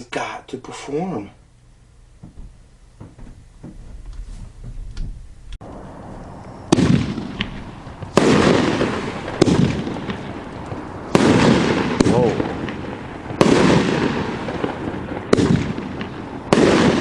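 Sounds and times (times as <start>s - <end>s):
firework shots: 6.7s - 17.0s.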